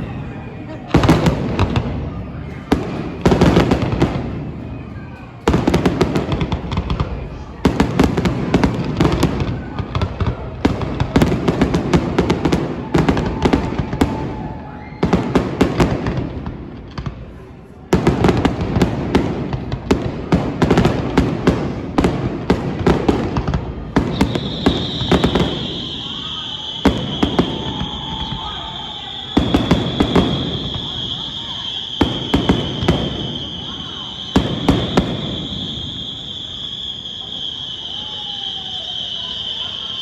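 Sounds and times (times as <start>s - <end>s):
fireworks crackling and banging: 0.0s - 40.0s
high-pitched whistle: 24.0s - 40.0s.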